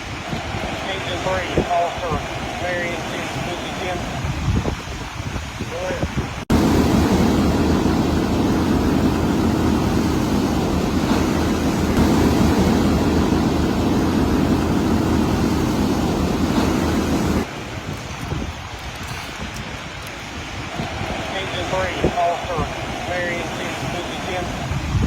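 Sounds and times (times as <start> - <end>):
loud rushing noise: 6.4 - 17.5, 20.5 - 24.9
low rumble: 6.4 - 17.5.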